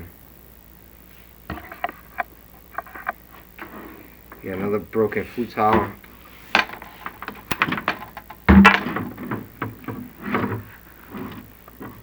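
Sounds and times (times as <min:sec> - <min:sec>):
camera knocking and scraping in flue: 0:01.5 - 0:03.7, 0:05.8 - 0:12.0
heavy thump: 0:08.5 - 0:10.5.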